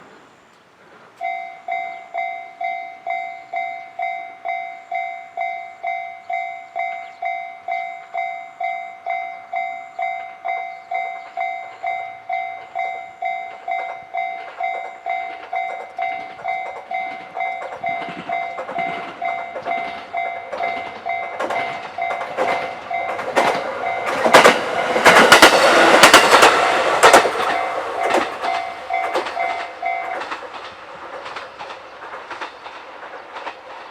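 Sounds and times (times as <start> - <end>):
two-tone crossing alarm ringing: 1.2 - 30.4
train wheels clattering over rails: 9.2 - 33.9.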